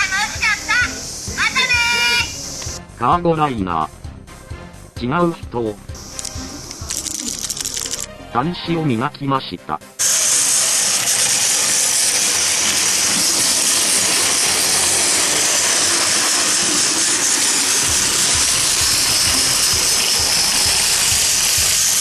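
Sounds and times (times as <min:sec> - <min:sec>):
loud rushing hiss: 0:00.0 - 0:02.8, 0:05.9 - 0:07.8, 0:10.0 - 0:22.0.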